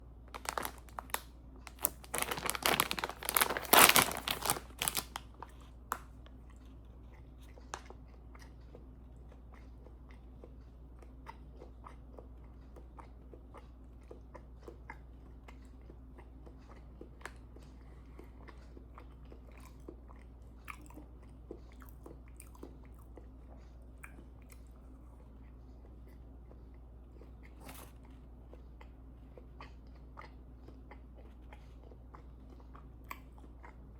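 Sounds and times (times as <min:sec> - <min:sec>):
crackling and crunching: 0:00.3 - 0:06.6
quiet chewing: 0:00.4 - 0:33.9.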